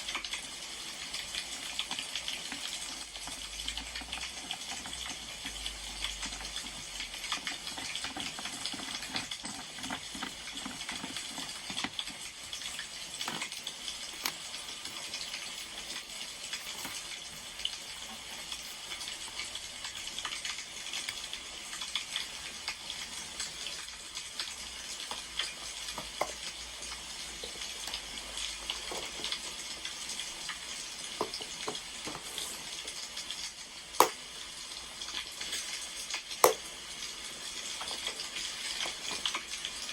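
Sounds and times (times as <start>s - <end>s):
wood fire crackling: 11.4s - 25.6s.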